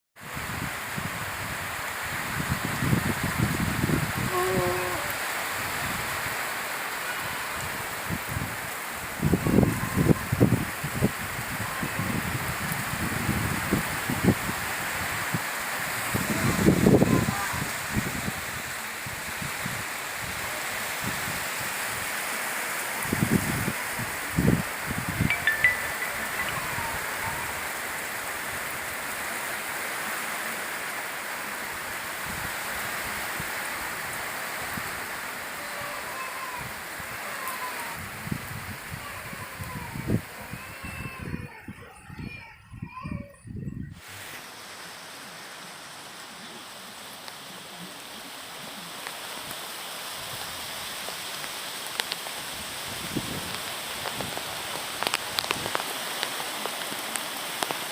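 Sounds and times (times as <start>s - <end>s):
heavy rain hissing: 0.2s - 41.6s, 43.9s - 57.9s
brief high chirps: 25.3s - 27.3s.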